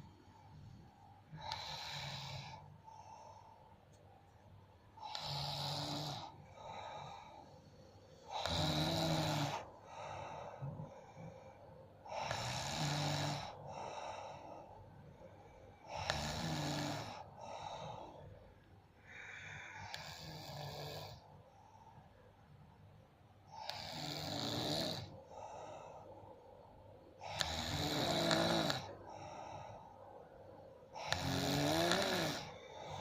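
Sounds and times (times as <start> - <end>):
person snoring heavily: 1.3 - 2.6, 5.0 - 7.5, 8.2 - 11.3, 12.1 - 14.5, 15.8 - 18.2, 19.1 - 21.2, 23.6 - 25.8, 27.2 - 29.8, 30.9 - 33.0.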